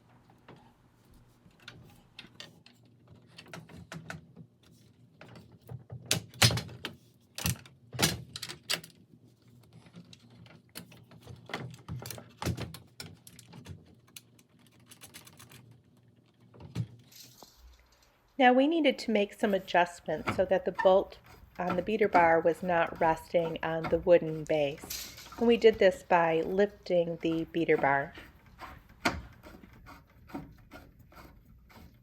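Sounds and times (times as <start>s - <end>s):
bolts and hand tools clinking: 19.5s - 28.4s.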